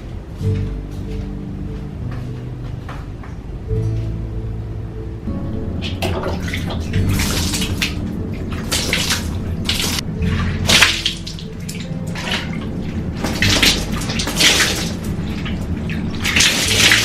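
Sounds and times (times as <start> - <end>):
running water splashing: 5.8 - 17.0.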